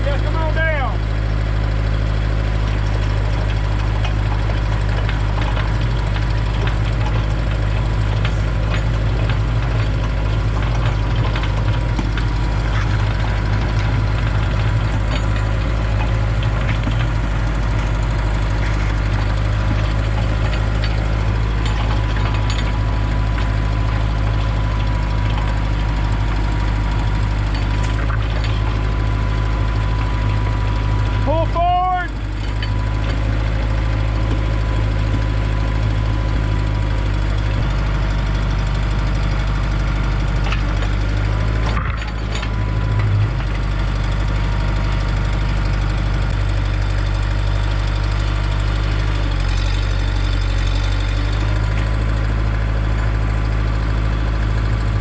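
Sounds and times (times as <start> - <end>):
tractor diesel engine running: 0.0 - 55.0
auger boring into ground: 0.1 - 55.0.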